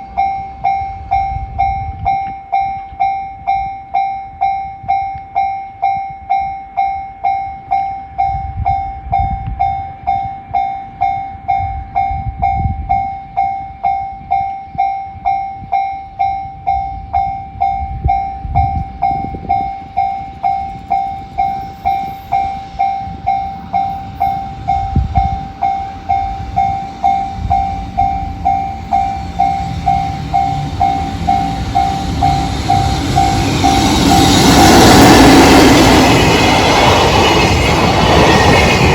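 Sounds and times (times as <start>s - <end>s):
freight train approaching: 0.0s - 38.9s
level crossing alarm tone: 0.0s - 38.9s
low rumbles: 22.4s - 38.9s.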